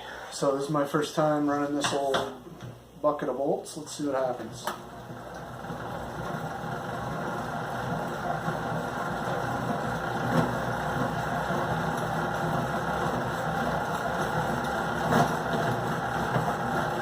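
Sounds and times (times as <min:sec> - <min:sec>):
honey extractor rumbling and rattling: 0:03.8 - 0:17.0.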